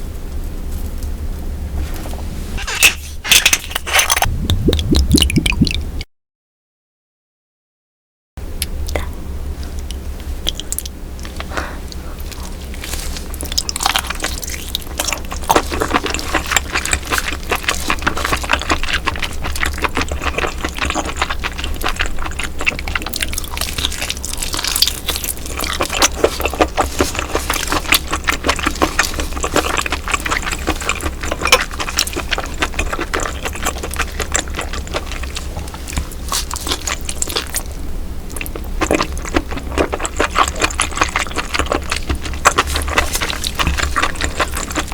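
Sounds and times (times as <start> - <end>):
low hum: 0.0 - 6.1
wet chewing and slurping: 2.6 - 5.9, 8.9 - 44.9.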